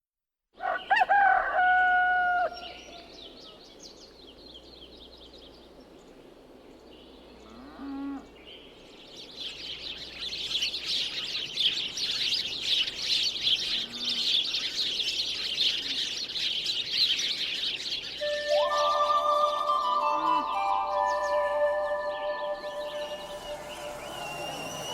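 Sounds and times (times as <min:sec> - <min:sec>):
rooster crowing: 0:00.6 - 0:03.1, 0:22.5 - 0:24.9
small birds chirping: 0:02.5 - 0:24.9.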